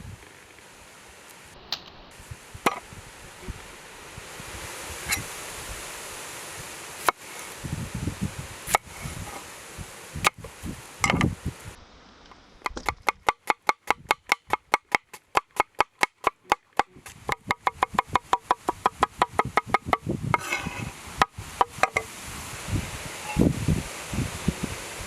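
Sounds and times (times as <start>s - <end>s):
knife chopping on wooden board: 12.6s - 20.5s.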